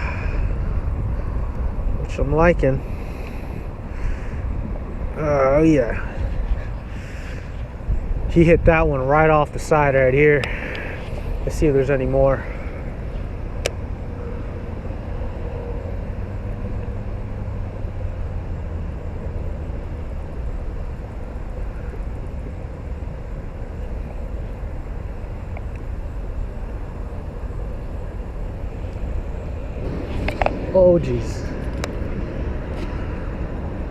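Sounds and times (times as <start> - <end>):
low outdoor rumble: 0.0 - 33.9.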